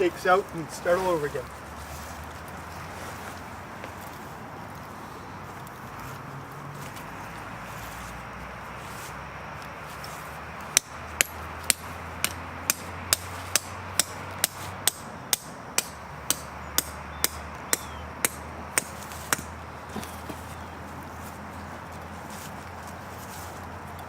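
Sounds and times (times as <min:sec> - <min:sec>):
tent stakes being hammered: 0:10.0 - 0:20.6.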